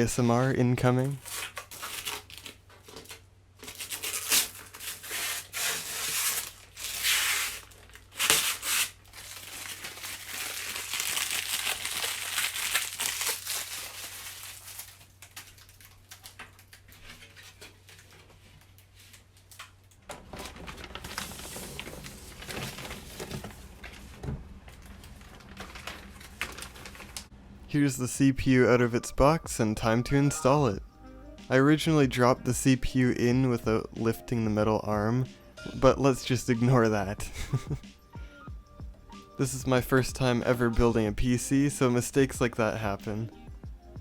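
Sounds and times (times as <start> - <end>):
plastic packaging crinkling and tearing: 0.8 - 24.1, 24.7 - 27.3.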